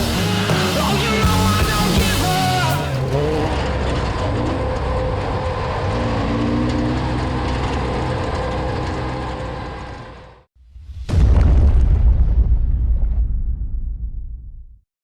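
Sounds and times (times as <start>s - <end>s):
race car engine running: 0.0s - 10.4s.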